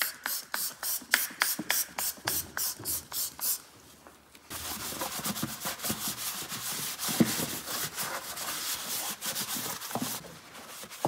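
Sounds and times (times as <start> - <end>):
rubbing and scraping: 4.5 - 11.0.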